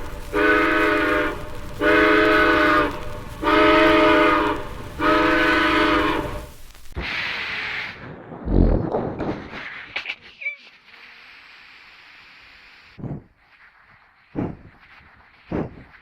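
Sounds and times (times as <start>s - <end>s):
steam locomotive whistle blasts: 0.0s - 6.6s
low rumble: 8.1s - 9.6s.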